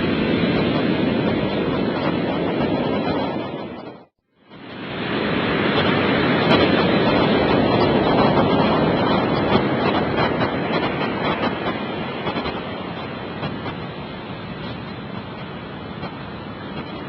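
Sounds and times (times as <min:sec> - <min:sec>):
surf breaking: 0:00.0 - 0:17.0.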